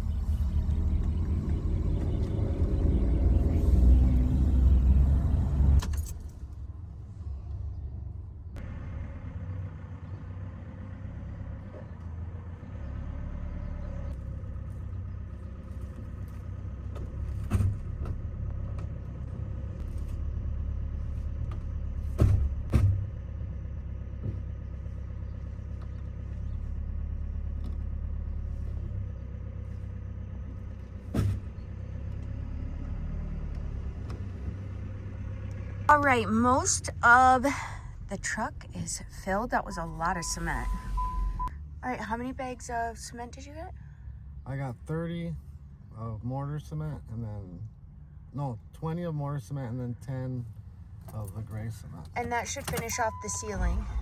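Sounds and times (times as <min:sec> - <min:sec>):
truck engine rumbling: 0:00.0 - 0:54.0
sharp thuds: 0:22.0 - 0:23.2, 0:31.1 - 0:31.6.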